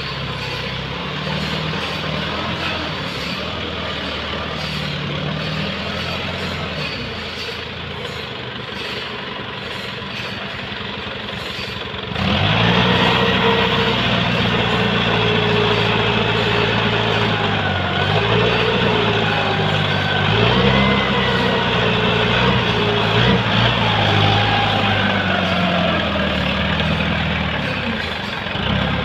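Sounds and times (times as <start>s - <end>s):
sawmill machinery humming: 0.0s - 29.0s
wavering machine whine: 12.9s - 28.4s.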